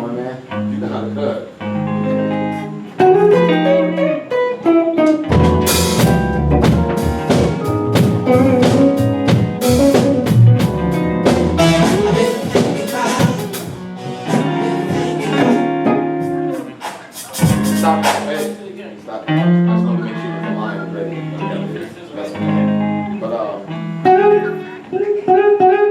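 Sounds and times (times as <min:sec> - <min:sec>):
electric guitar line: 0:00.0 - 0:25.9
drum kit groove: 0:02.6 - 0:18.8.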